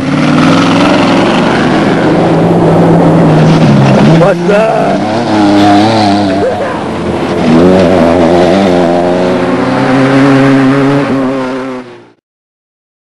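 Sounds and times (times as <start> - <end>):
race vehicle engine running hard: 0.0 - 12.2.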